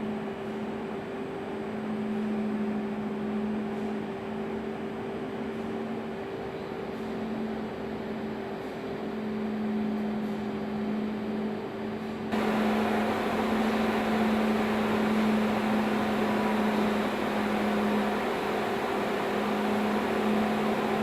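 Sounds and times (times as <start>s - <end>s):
boiler machinery hum: 0.0s - 21.0s
rushing hiss: 12.4s - 21.0s.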